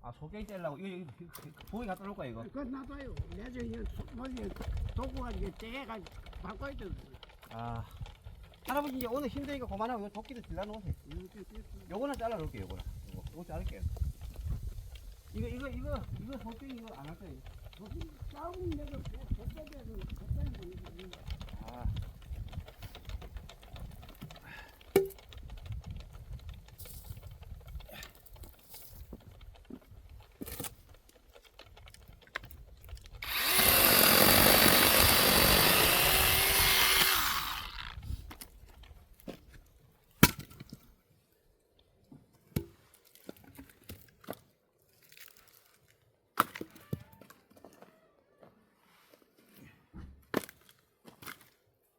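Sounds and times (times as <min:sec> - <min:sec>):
wood cracking: 0:13.7 - 0:40.9
firewood clattering and thudding: 0:21.2 - 0:33.2, 0:40.2 - 0:40.9
axe striking firewood: 0:40.2 - 0:40.8.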